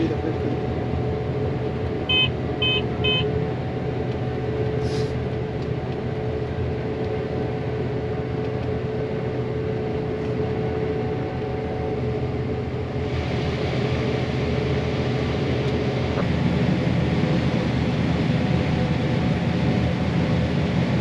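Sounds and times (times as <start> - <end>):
combine harvester running: 0.0 - 21.0
short electronic beeps: 2.1 - 3.3.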